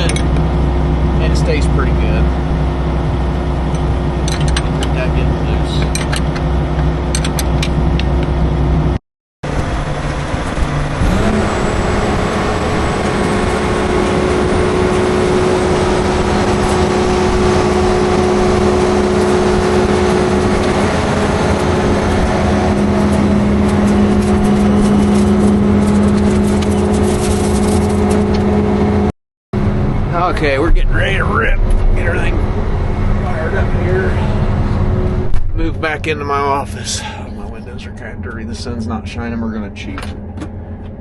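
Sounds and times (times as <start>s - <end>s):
combine harvester machinery hum: 0.0s - 41.0s.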